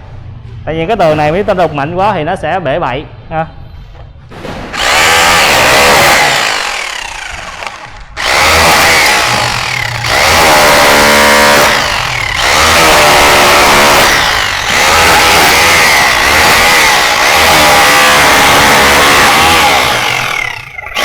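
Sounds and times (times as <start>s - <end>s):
rotary hammer chiselling wall: 4.7s - 21.0s.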